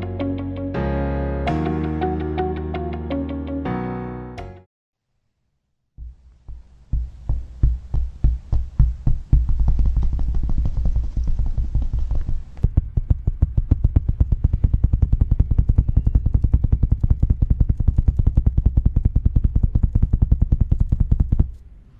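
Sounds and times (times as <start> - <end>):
rapid heavy thuds: 6.0 - 21.6.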